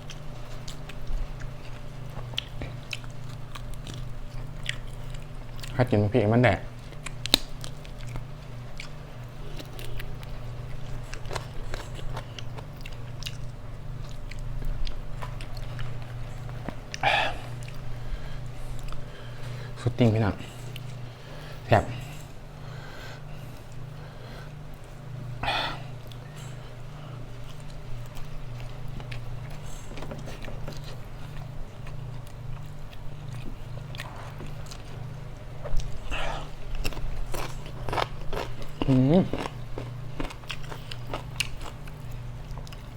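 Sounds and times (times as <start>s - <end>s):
chewing and biting food: 0.0s - 42.9s
steady low hum: 0.0s - 42.9s
crisp mouth clicks: 7.1s - 8.2s.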